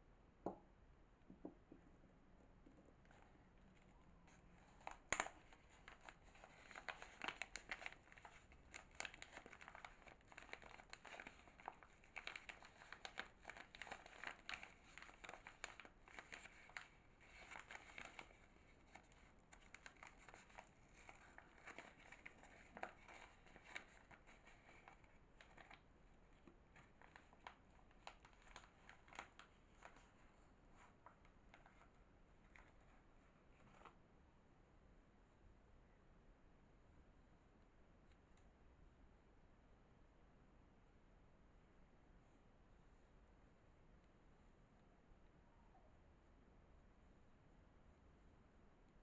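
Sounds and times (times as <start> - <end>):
packaging crinkling: 4.3 - 32.8.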